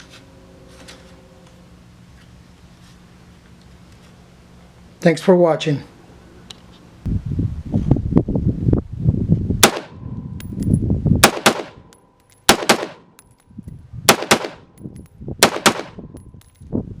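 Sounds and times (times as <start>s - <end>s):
gunshots: 9.6s - 10.0s, 11.2s - 11.8s, 12.5s - 13.1s, 14.1s - 14.7s, 15.4s - 16.0s.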